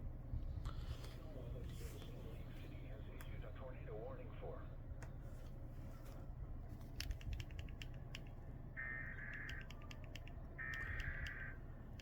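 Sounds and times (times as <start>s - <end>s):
low hum: 0.0s - 12.0s
scattered clicks: 6.8s - 8.4s, 9.2s - 11.4s.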